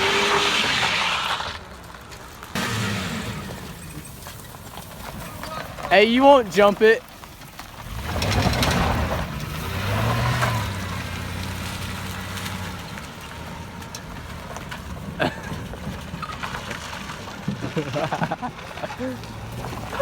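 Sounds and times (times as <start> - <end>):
knocking engine revving hard: 2.6 - 4.2, 7.8 - 12.9.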